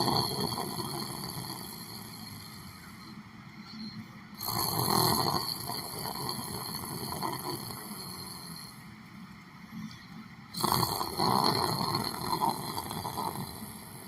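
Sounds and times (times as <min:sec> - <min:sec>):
person snoring: 0:00.0 - 0:02.8, 0:04.4 - 0:08.7, 0:10.6 - 0:14.0.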